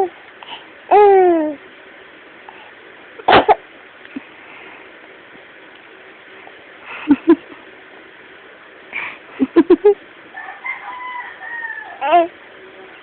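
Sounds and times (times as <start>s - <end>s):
high gliding baby voice: 12.0s - 12.4s.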